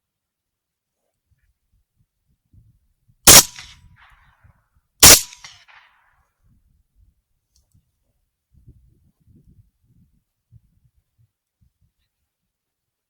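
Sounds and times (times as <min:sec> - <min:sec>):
suppressed rifle shots: 0:03.3 - 0:03.8, 0:05.0 - 0:05.8.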